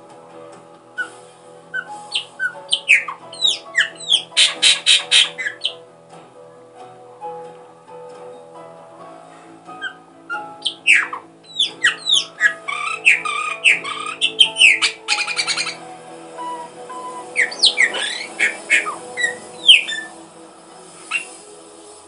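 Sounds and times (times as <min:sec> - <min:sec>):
quiet background music: 0:00.0 - 0:22.0
bird chirping and squawking: 0:01.0 - 0:05.8, 0:09.8 - 0:15.9, 0:16.5 - 0:20.2, 0:21.0 - 0:21.4.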